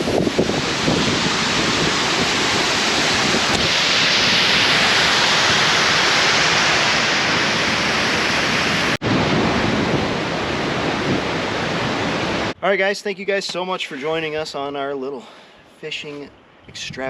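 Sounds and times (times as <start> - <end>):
river water rushing: 0.0 - 12.6.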